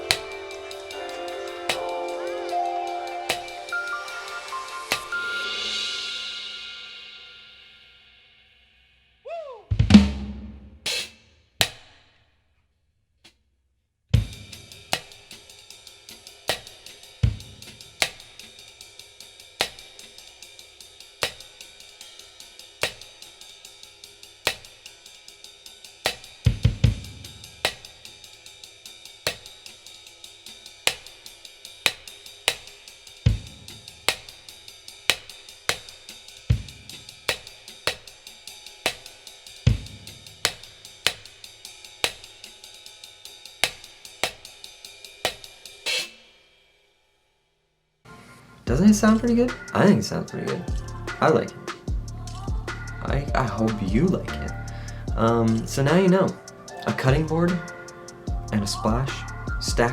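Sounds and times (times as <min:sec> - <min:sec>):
hi-hat ticks: 0:00.0 - 0:02.6, 0:14.4 - 0:46.1, 0:48.7 - 0:56.0, 0:56.8 - 0:59.9
clap-like cymbal accent: 0:00.0 - 0:07.6, 0:27.2 - 0:46.5.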